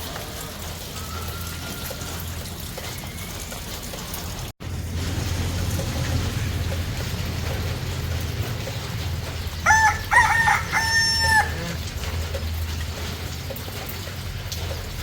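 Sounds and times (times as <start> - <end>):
rooster crowing: 9.6 - 11.8.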